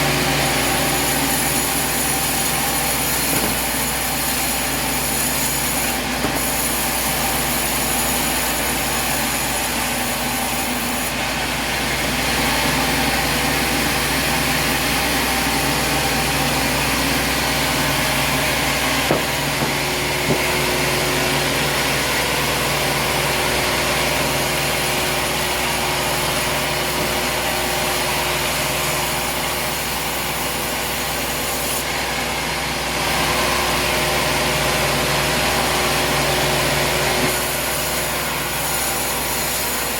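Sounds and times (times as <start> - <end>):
sawmill blade cutting log: 0.0 - 39.9.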